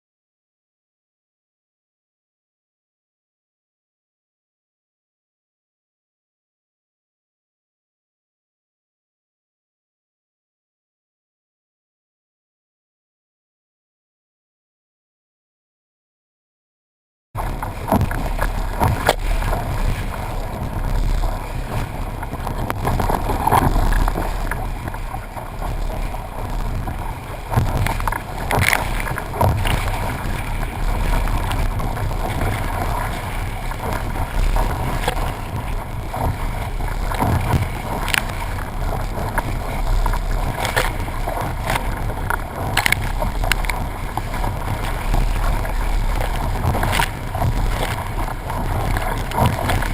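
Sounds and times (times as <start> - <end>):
water rushing: 17.4 - 49.9
wind: 17.4 - 49.9.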